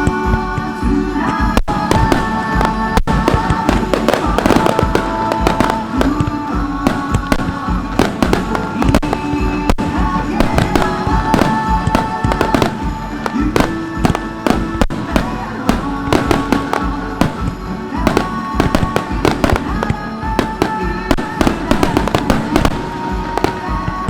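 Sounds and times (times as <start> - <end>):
fireworks bursting and crackling: 0.0 - 24.0
music playing: 0.0 - 24.0.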